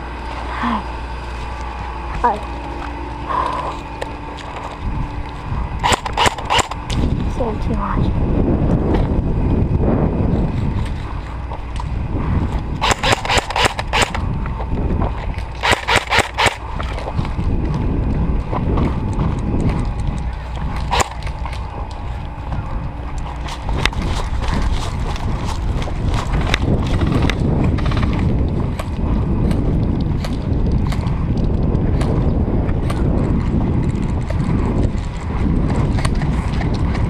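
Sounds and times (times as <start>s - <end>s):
low rumble: 0.0s - 37.0s
airsoft gun shots: 5.8s - 6.8s, 12.8s - 14.2s, 15.6s - 16.6s.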